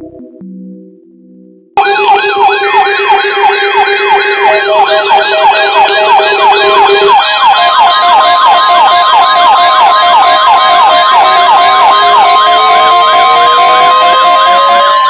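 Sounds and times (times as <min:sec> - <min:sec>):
steady electronic tone: 0:00.4 - 0:09.2
electronic sirens yelping: 0:01.8 - 0:15.0.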